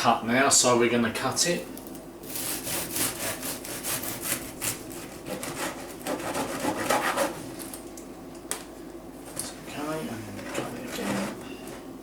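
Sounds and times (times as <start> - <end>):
knife sawing through cake: 2.3 - 7.5.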